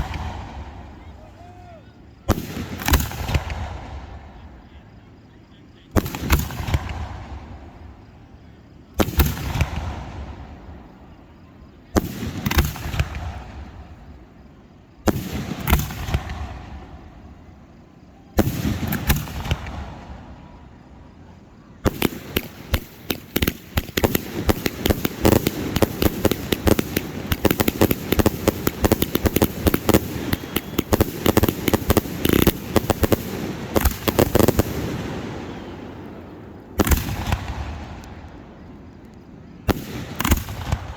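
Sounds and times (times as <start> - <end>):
rapid barrage of firework bangs: 0.0 - 1.0, 2.3 - 4.4, 5.9 - 7.8, 8.9 - 10.8, 11.9 - 14.1, 15.0 - 17.2, 18.4 - 20.5, 21.8 - 38.7, 39.6 - 40.9
firework shells booming: 0.0 - 4.7, 5.9 - 8.1, 8.8 - 11.0, 12.0 - 17.8, 18.4 - 20.9, 21.8 - 40.9.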